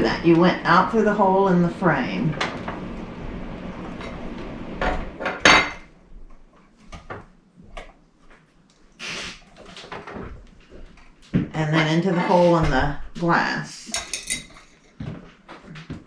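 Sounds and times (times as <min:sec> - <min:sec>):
chandelier parts clattering: 0:03.8 - 0:05.9, 0:11.6 - 0:16.0
chandelier parts clinking: 0:13.9 - 0:15.0.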